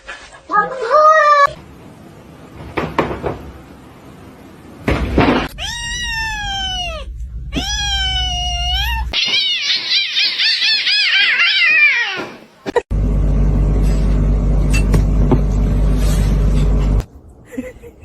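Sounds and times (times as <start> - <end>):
cat meowing loudly: 5.5 - 12.4.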